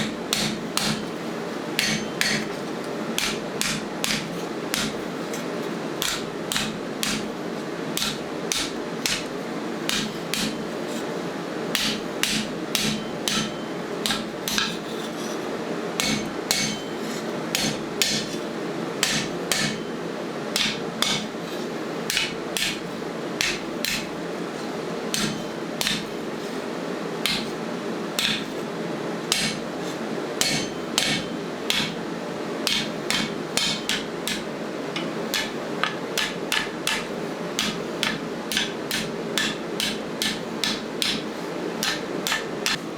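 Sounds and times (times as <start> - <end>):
hammer striking steel: 0.3 - 1.1, 1.8 - 2.6, 6.0 - 7.3, 8.0 - 9.3, 9.9 - 10.6, 11.8 - 14.8, 16.0 - 17.0, 17.6 - 18.3, 19.0 - 19.9, 20.6 - 21.3, 22.1 - 22.8, 25.2 - 26.1, 29.3 - 29.6, 30.4 - 32.0, 32.7 - 41.2, 41.8 - 42.8.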